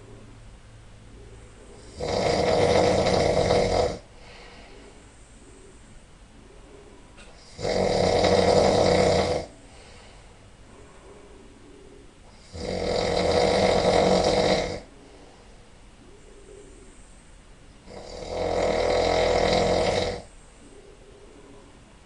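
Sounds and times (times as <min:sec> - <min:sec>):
quiet breathing: 0:01.2 - 0:13.2, 0:14.4 - 0:22.0
man snoring loudly: 0:01.8 - 0:04.1, 0:07.4 - 0:09.6, 0:12.3 - 0:14.9, 0:17.8 - 0:20.3.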